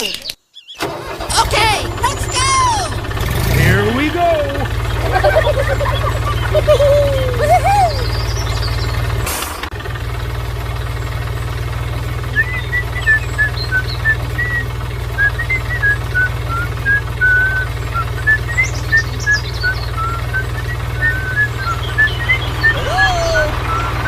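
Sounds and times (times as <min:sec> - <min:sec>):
low motor hum: 0:01.1 - 0:24.0
high chirping whistles: 0:05.1 - 0:09.1, 0:12.3 - 0:24.0.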